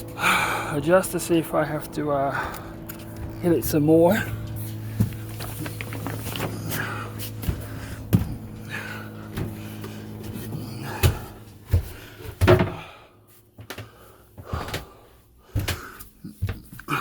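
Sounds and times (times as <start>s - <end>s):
low steady hum: 0.0s - 17.0s
footsteps: 9.3s - 12.7s.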